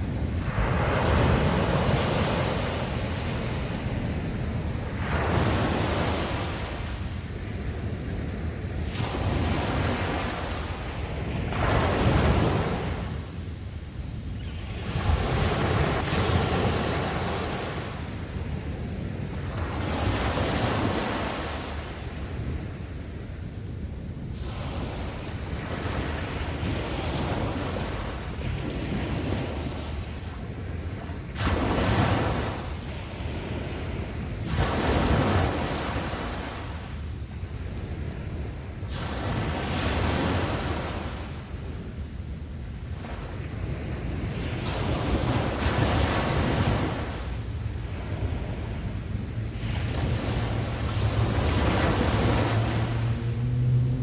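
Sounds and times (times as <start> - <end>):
sea waves breaking: 0.0 - 13.3, 24.4 - 41.5, 42.9 - 54.0
low rumble of surf: 0.0 - 54.0.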